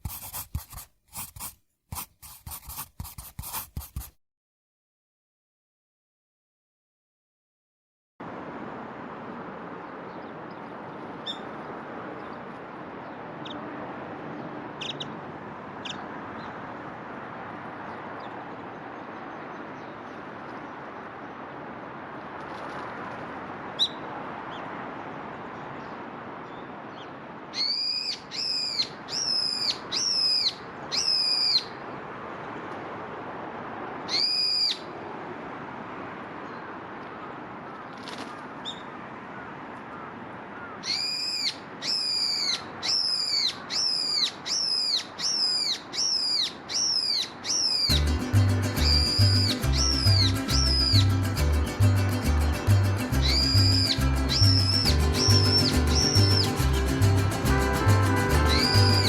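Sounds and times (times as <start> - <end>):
outdoor background noise: 8.2 - 59.0
bird whistled call: 40.9 - 48.0, 48.8 - 51.1, 53.2 - 56.6
background music: 48.0 - 59.0.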